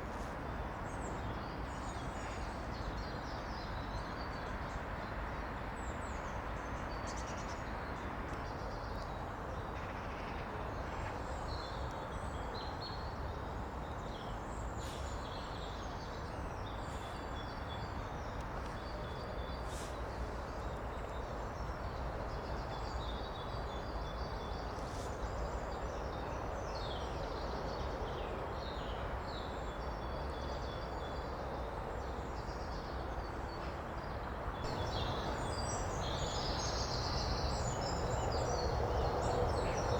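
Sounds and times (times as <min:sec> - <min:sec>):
birds singing and chirping: 0:34.7 - 0:39.9
stream running: 0:34.7 - 0:39.9.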